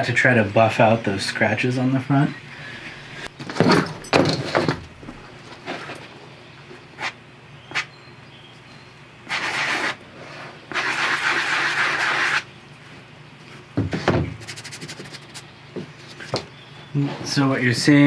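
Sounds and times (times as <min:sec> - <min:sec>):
sanding block scraping leather: 0:09.3 - 0:10.0, 0:10.7 - 0:12.4.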